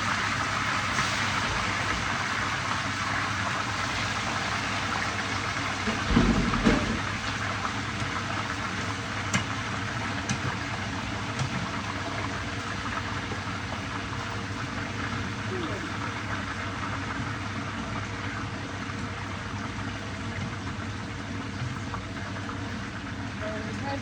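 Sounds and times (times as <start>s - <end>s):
fish sizzling in hot oil: 0.0s - 24.0s
low thump: 6.0s - 7.1s.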